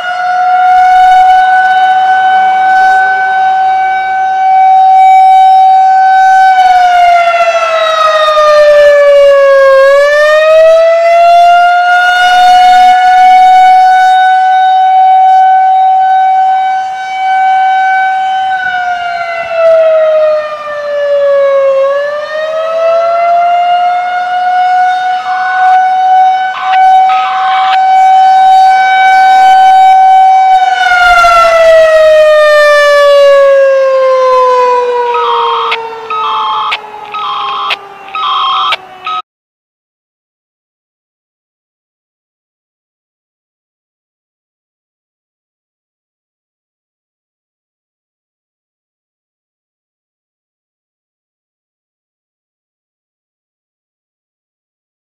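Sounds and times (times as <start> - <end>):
outdoor warning siren: 0.0 - 39.3.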